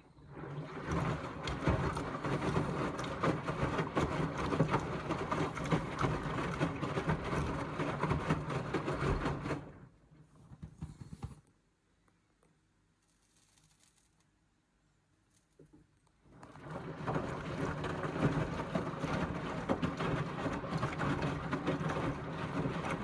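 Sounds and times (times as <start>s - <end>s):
washing machine motor hum: 0.1s - 9.9s, 16.3s - 23.0s
water sloshing in drum: 0.3s - 9.9s, 16.4s - 23.0s.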